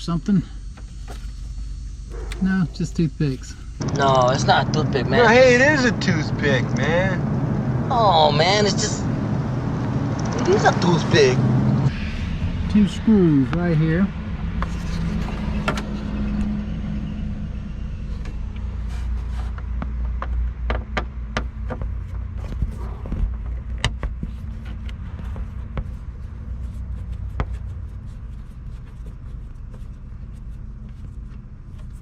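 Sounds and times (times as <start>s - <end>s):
low rumble: 1.6s - 18.8s.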